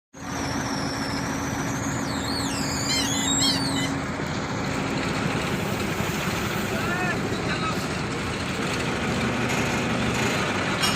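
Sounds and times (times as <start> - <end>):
diesel engine running: 0.2 - 10.9
high wavering chirps: 0.3 - 4.1.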